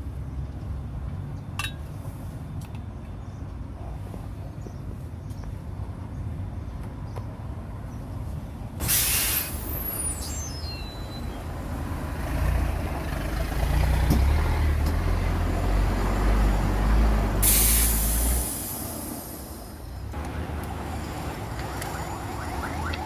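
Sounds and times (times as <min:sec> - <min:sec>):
hissing air blasts: 0:08.8 - 0:10.8, 0:17.3 - 0:20.9.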